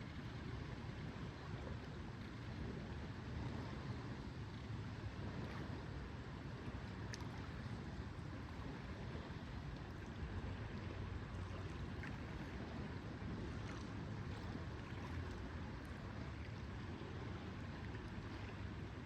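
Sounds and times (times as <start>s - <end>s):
water washing at shore: 6.5s - 19.0s.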